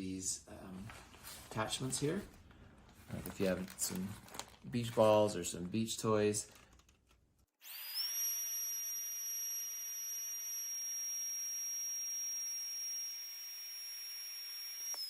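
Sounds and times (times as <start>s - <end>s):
handheld vacuum motor whine: 7.6s - 15.0s.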